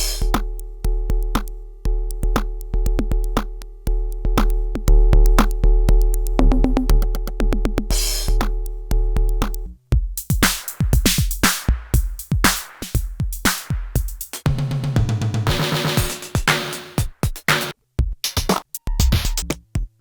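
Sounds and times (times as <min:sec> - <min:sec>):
drum machine beats: 0:00.0 - 0:20.0
booming kick drums: 0:09.2 - 0:17.3.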